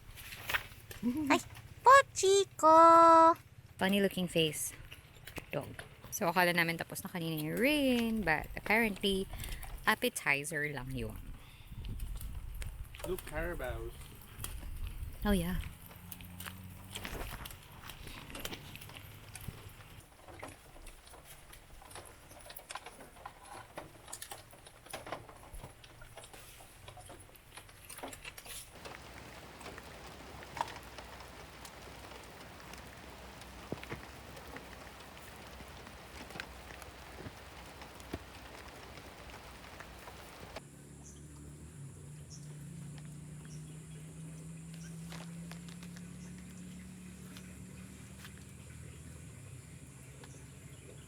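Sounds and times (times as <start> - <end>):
rain patter: 0.0 - 4.5, 5.6 - 40.6.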